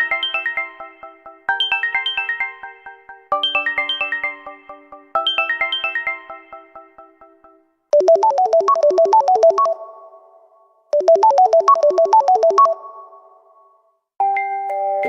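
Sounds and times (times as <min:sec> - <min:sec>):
electronic ringtone notes: 0:00.0 - 0:10.4, 0:11.0 - 0:13.5.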